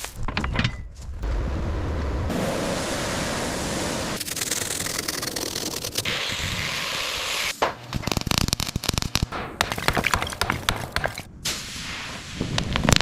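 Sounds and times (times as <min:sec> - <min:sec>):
sharp cracks and knocks: 0:07.5 - 0:11.3.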